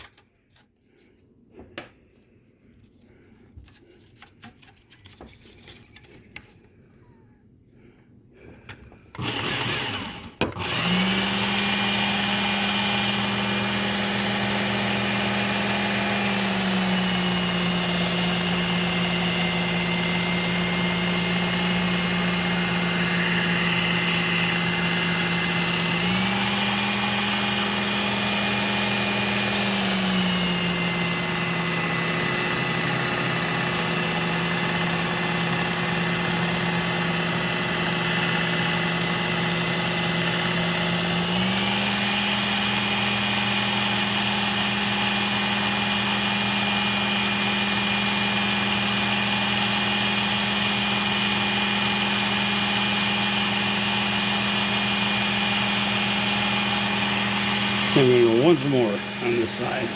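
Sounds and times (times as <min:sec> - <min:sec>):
belt sharpener motor hum: 0:09.2 - 0:59.9.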